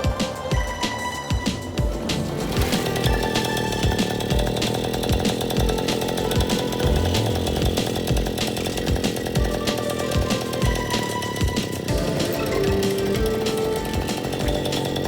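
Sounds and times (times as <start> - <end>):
moped engine buzzing: 0.0 - 15.0.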